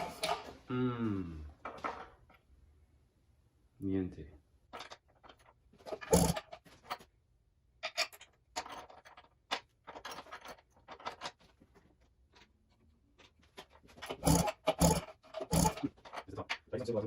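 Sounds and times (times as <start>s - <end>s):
tools and metal parts clicking: 4.7s - 7.0s, 7.8s - 11.4s, 13.6s - 16.8s.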